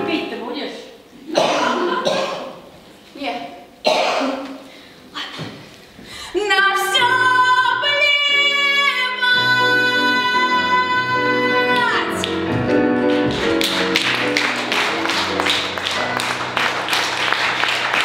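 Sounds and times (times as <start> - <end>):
instrumental accompaniment: 9.6 - 18.0
audience applause: 13.1 - 18.0.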